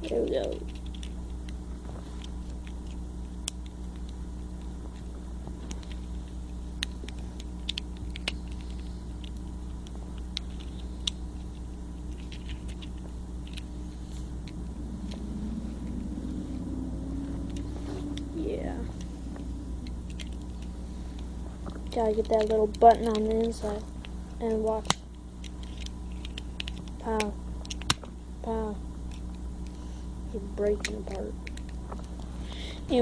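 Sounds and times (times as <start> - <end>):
steady low hum: 0.0 - 33.0
plastic clicks and scratches: 6.8 - 13.7, 24.8 - 27.0.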